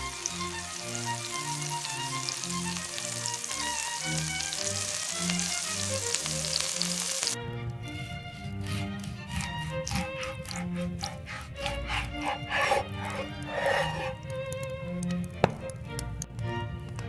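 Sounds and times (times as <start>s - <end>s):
food sizzling in a pan: 0.0s - 7.4s.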